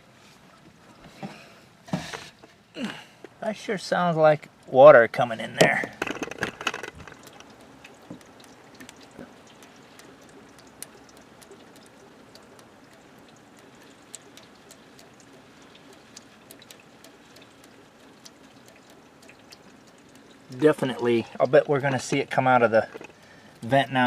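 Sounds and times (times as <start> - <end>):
water drips and ticks: 3.2 - 24.0
low hiss of water: 6.8 - 24.0.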